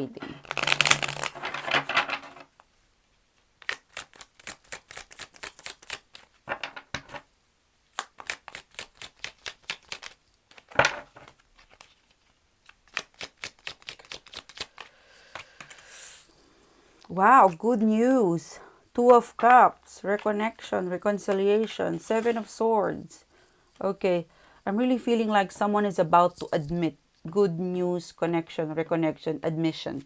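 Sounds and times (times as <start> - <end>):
cards being shuffled: 0.3 - 2.4, 3.6 - 7.2, 7.9 - 16.3.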